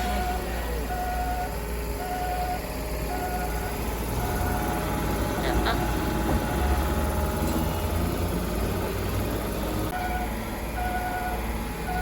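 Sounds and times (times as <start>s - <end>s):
large vehicle engine rumble: 0.0s - 12.0s.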